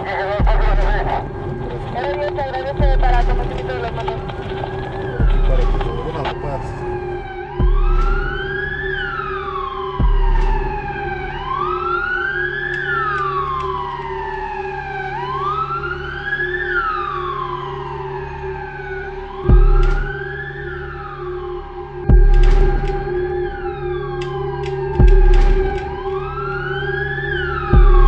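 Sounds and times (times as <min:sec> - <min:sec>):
low engine rumble: 0:00.0 - 0:14.3, 0:22.1 - 0:28.0
emergency siren wailing: 0:00.0 - 0:28.0.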